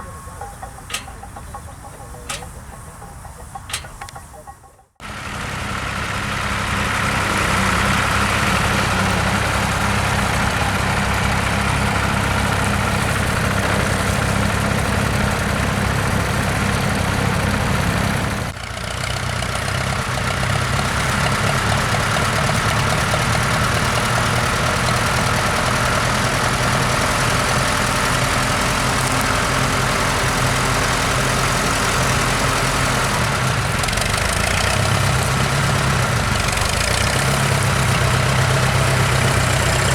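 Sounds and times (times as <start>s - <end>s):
tractor engines running: 0.0s - 39.9s.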